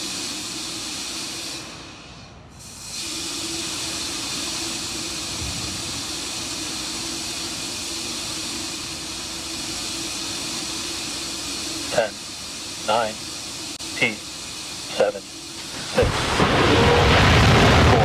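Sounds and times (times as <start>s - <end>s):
steady hiss: 2.7s - 16.0s.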